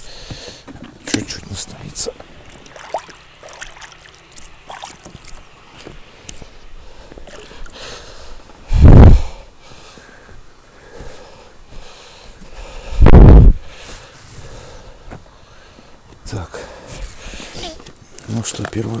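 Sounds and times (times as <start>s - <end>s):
air rush buffeting microphone: 5.6s - 17.8s.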